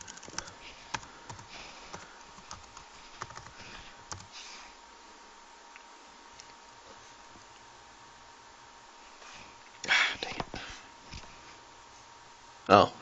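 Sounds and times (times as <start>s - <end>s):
laptop keyboard typing: 0.0s - 4.3s.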